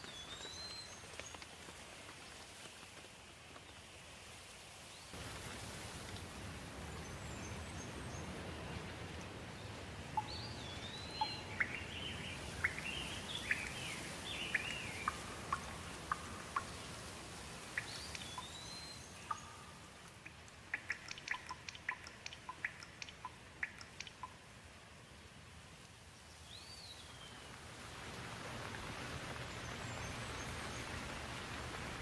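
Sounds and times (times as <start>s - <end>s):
light rain hissing: 0.0s - 32.0s
water dripping: 5.2s - 24.8s
bird singing warbled whistles: 10.2s - 15.6s, 17.8s - 19.7s.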